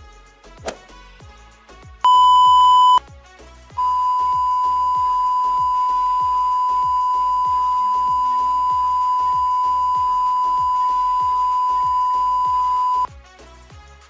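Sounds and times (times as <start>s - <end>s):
electronic beep tone: 2.1s - 3.0s, 3.8s - 13.1s.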